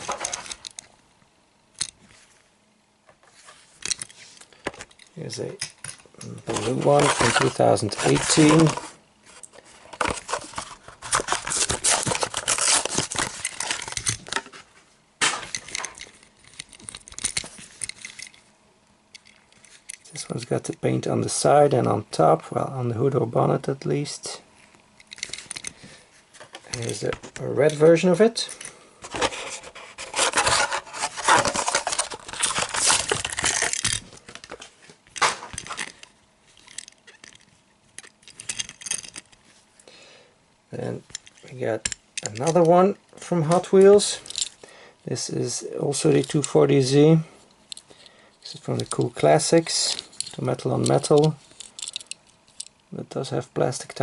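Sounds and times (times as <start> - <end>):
plastic packaging crinkling: 6.5 - 9.0, 9.9 - 14.5, 29.1 - 37.6.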